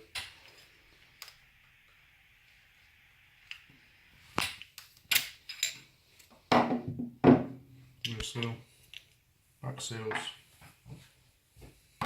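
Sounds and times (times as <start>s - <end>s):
clicks and knocks of metal parts: 4.4s - 6.4s.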